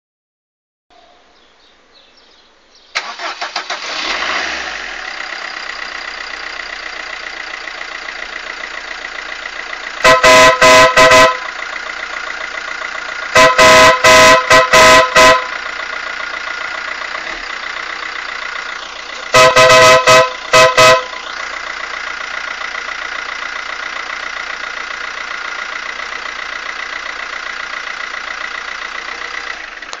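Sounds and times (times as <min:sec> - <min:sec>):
loud car horn blasts: 0:10.0 - 0:11.6, 0:13.3 - 0:15.7, 0:19.3 - 0:21.3.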